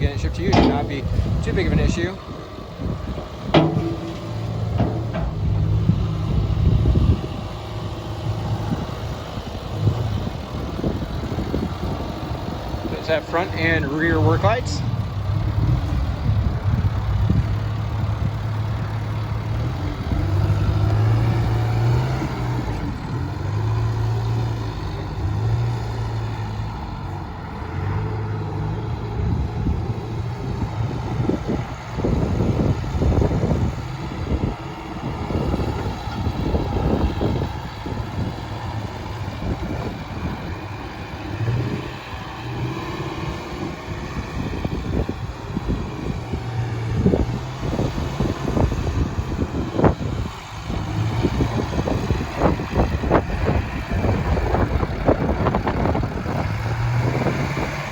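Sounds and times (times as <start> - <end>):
diesel engine running: 0.0 - 57.9
thumps: 0.3 - 2.0, 3.4 - 7.1.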